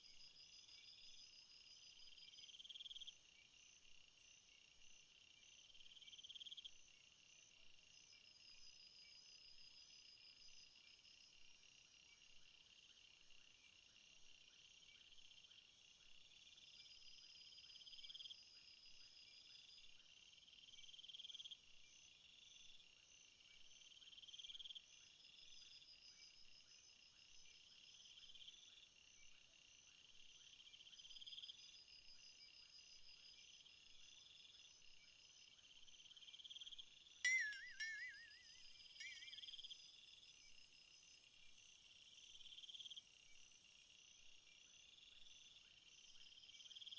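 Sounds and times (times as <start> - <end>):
faint insects trilling: 22.8 - 46.9.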